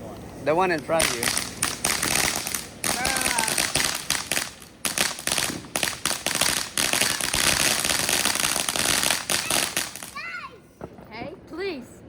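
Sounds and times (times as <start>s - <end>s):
fireworks crackling: 0.5s - 10.4s
fireworks hiss: 0.9s - 10.2s.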